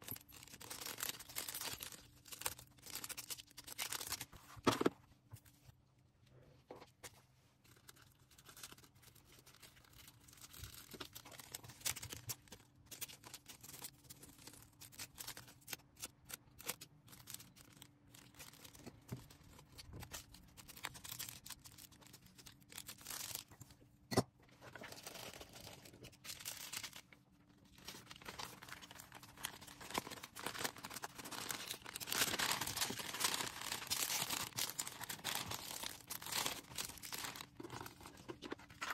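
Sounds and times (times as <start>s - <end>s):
packaging material rustling: 0.1s - 4.9s, 24.7s - 38.9s.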